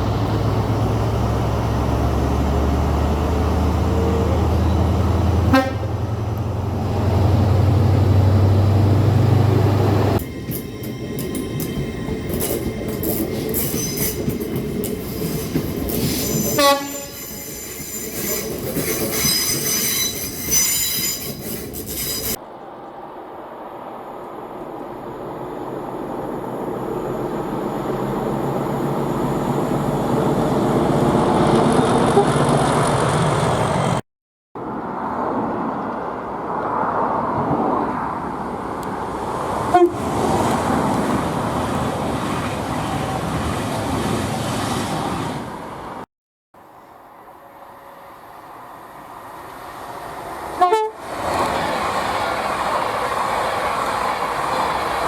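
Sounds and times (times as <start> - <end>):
train passing: 0.0 - 34.0, 34.6 - 55.0
train horns: 4.2 - 6.3, 16.4 - 17.3, 32.1 - 32.4, 39.6 - 40.3, 50.5 - 51.1
train wheel squeal: 10.2 - 22.4.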